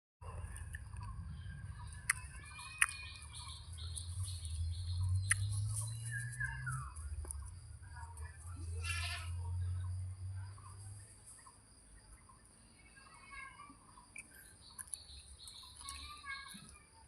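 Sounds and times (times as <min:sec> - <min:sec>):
small birds chirping: 0:00.2 - 0:17.0
sharp clicks: 0:01.9 - 0:04.1, 0:05.2 - 0:05.8.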